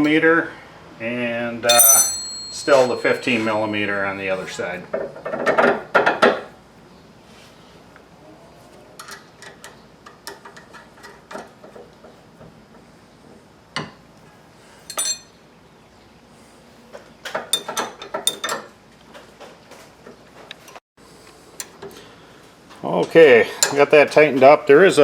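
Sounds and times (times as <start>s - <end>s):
metal tools clinking: 1.7s - 4.1s, 14.9s - 15.4s.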